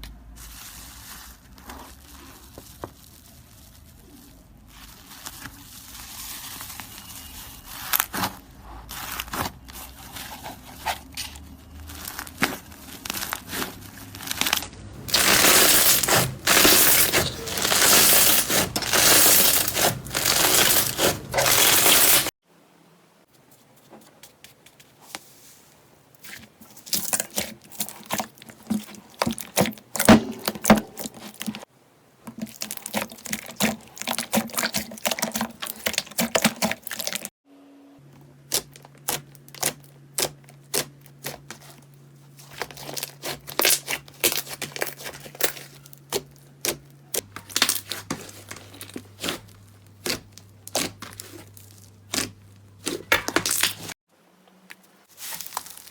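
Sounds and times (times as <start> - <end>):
slime crackling and popping: 12.0 - 22.3, 32.4 - 37.3, 38.5 - 41.7, 42.5 - 53.9, 55.2 - 55.9.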